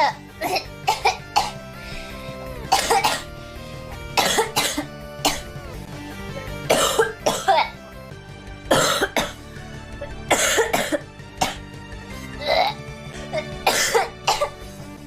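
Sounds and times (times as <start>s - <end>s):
girl coughing: 0.0s - 1.6s, 2.7s - 3.3s, 4.2s - 5.5s, 6.7s - 7.7s, 8.7s - 9.4s, 10.3s - 11.6s, 12.4s - 14.5s
background music: 0.0s - 15.0s.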